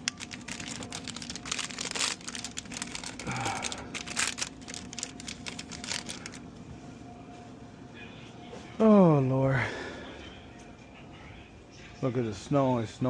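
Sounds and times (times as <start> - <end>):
candy wrappers crinkling: 0.0 - 6.5.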